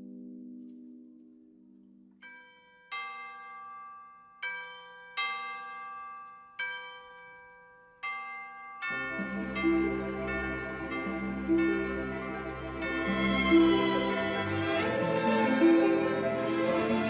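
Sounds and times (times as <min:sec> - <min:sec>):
bell-like struck notes: 0:02.1 - 0:17.0
background music instrumentation: 0:08.9 - 0:17.0.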